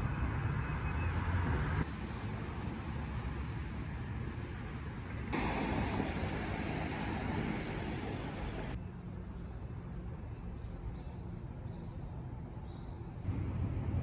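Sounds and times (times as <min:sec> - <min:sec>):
road traffic noise: 0:00.0 - 0:14.0.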